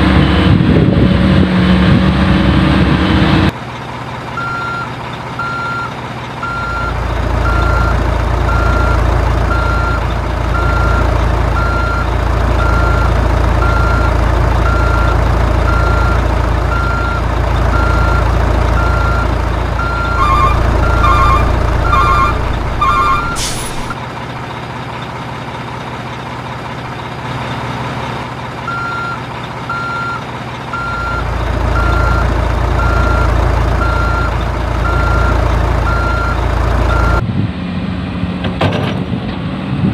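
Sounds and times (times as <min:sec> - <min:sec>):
reversing beeper beeps: 0:18.8 - 0:24.0, 0:30.8 - 0:31.2, 0:31.8 - 0:37.2.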